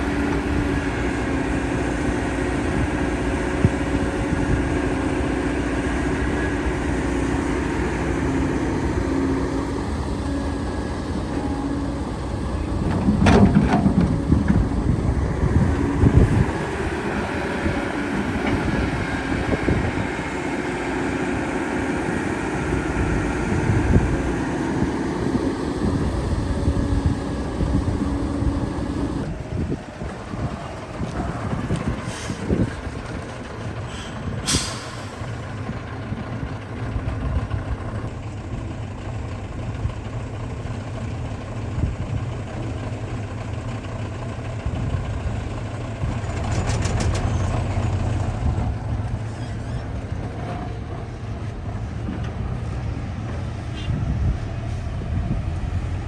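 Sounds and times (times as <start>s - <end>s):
excavator diesel engine running: 0.0s - 56.0s
heavy knocks and crashes: 12.8s - 14.8s.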